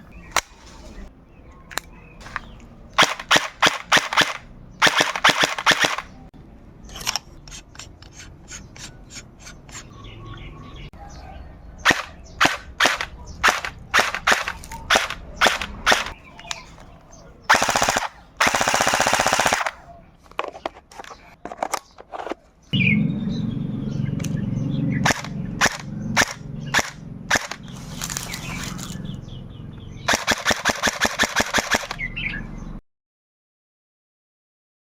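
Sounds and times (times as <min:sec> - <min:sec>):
gel blaster firing: 0:03.0 - 0:06.1, 0:11.8 - 0:16.2, 0:17.5 - 0:19.8, 0:25.0 - 0:27.6, 0:30.1 - 0:32.0.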